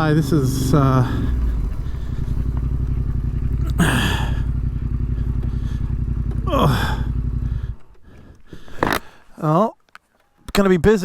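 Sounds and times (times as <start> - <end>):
motorcycle engine running: 0.0 - 9.2.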